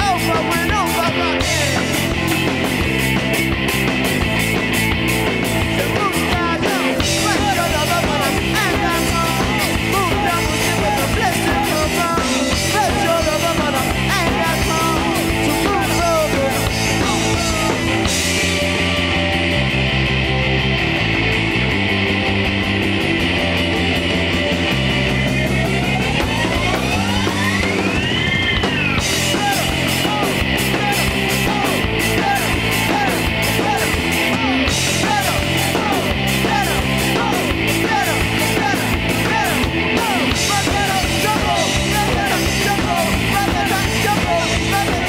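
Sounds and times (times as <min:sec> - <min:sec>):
drums and cymbals: 0:00.0 - 0:20.3, 0:22.6 - 0:45.0
rock band playing: 0:00.0 - 0:45.0
sliding lead guitar lines: 0:00.0 - 0:45.0
rising pitch glide: 0:24.8 - 0:30.8.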